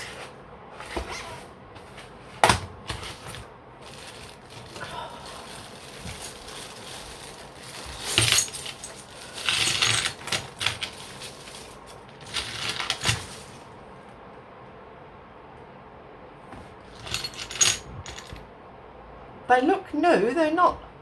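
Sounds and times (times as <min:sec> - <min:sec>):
rustling of supplies: 0:00.0 - 0:14.2, 0:16.4 - 0:18.4
small metal pieces clinking: 0:03.0 - 0:13.6, 0:17.0 - 0:18.4.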